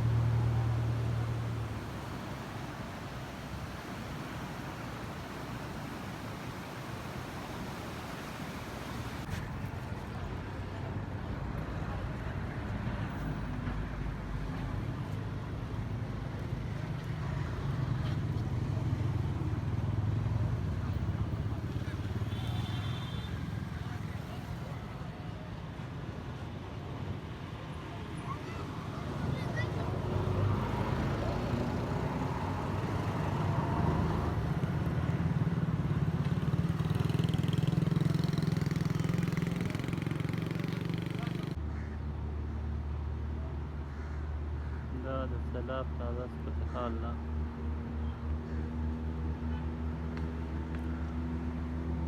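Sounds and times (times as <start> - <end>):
engine humming: 0.0 - 9.3
rush of wind or water: 0.0 - 9.4.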